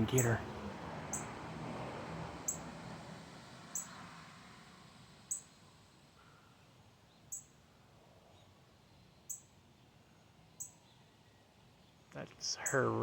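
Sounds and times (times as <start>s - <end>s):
bird chip calls: 0.0s - 0.5s.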